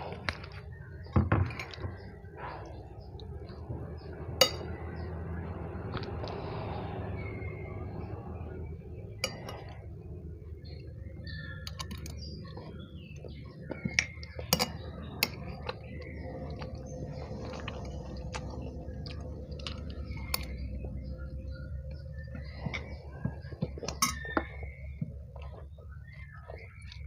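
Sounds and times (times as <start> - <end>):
cutlery clinking against a bowl: 4.4 - 4.8, 9.2 - 9.8, 13.8 - 15.5, 23.9 - 24.5
person chewing: 11.7 - 27.0.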